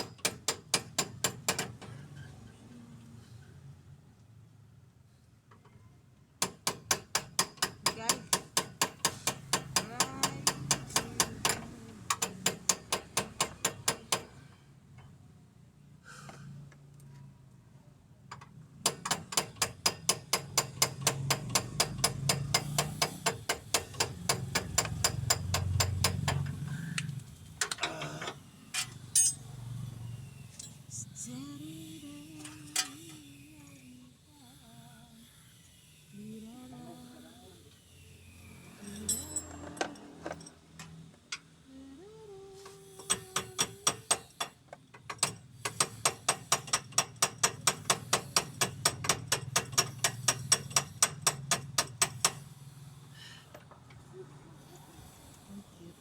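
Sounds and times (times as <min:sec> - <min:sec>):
rapid metal clicking from hand tool: 0:18.8 - 0:27.8, 0:42.9 - 0:52.6.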